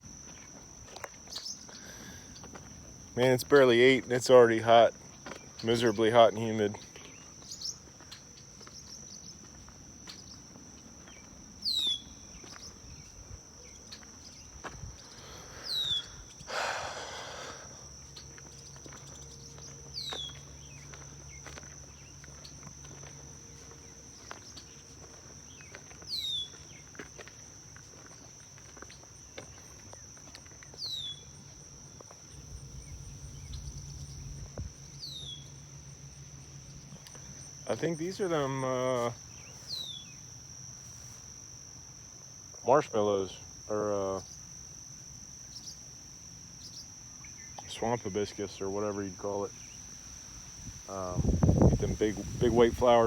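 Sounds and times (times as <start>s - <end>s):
high-pitched insect chorus: 0.0s - 53.0s
rustle: 17.8s - 42.7s, 43.3s - 53.0s.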